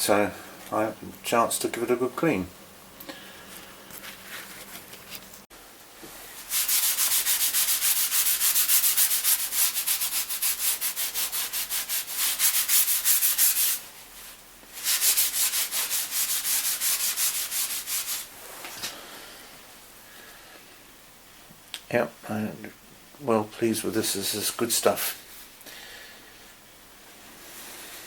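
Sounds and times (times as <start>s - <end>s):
fast scrubbing on paintwork: 6.4s - 18.3s.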